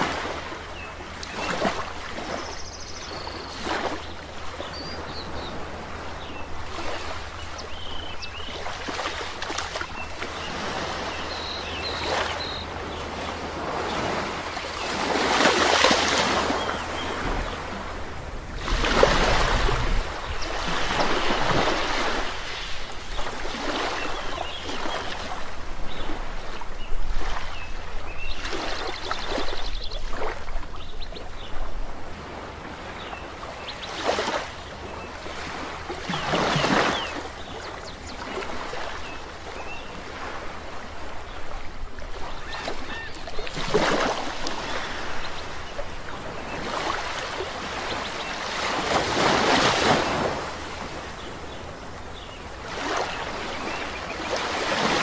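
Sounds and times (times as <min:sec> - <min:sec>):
sea waves breaking on shore: 0:00.0 - 0:55.0
faint bird calls: 0:42.1 - 0:48.6.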